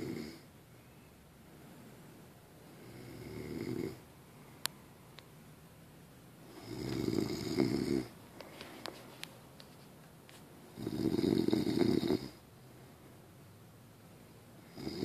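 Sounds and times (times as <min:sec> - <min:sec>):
person snoring: 0:00.0 - 0:00.5, 0:02.7 - 0:04.0, 0:06.5 - 0:08.1, 0:10.8 - 0:12.4, 0:14.7 - 0:15.0.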